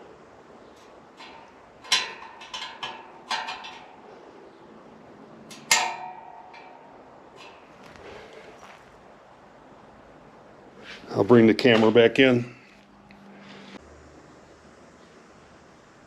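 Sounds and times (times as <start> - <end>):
wrench clinking on wire spokes: 0.8 - 4.1, 5.4 - 7.8.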